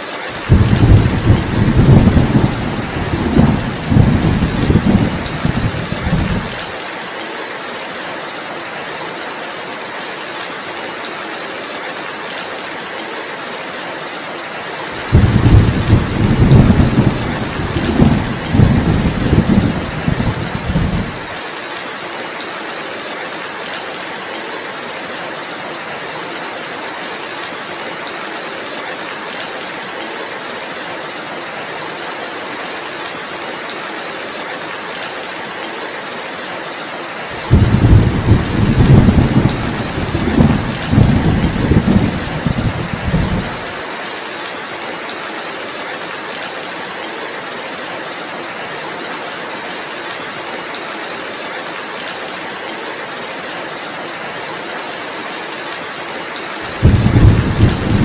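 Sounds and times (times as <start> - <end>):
heavy rain: 0.0 - 58.0
thunder rumbling: 0.4 - 6.6, 15.0 - 21.3, 37.4 - 43.7, 56.8 - 58.0.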